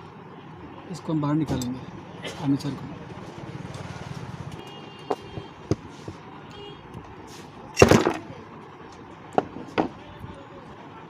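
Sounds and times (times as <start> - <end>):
metal knocks and clunks: 7.8 - 8.3.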